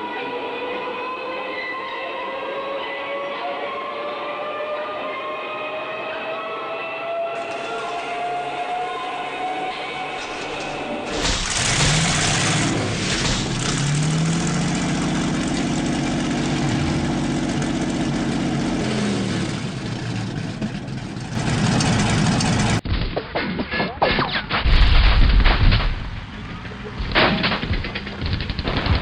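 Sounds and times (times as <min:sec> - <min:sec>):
tank engine revving: 0:07.4 - 0:22.8, 0:25.4 - 0:29.0.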